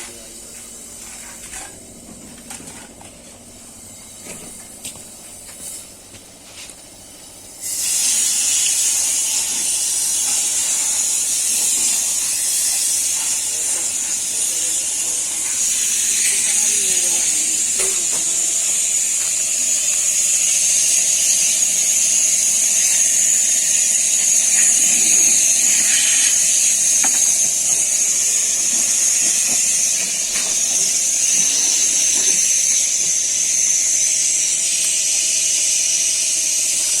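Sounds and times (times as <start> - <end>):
loud hiss: 7.5 - 37.0
high-pitched whine: 7.6 - 37.0.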